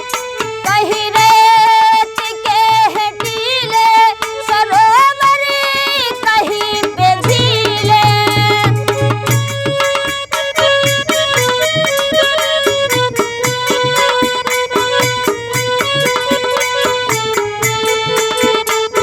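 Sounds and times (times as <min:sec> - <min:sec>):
drum rhythm: 0:00.0 - 0:19.0
woman singing folk song: 0:00.6 - 0:09.2.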